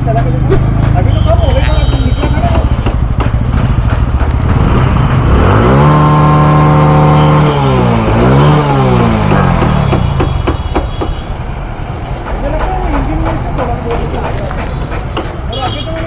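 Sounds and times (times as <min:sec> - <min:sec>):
motorcycle engine revving: 0:00.2 - 0:10.5.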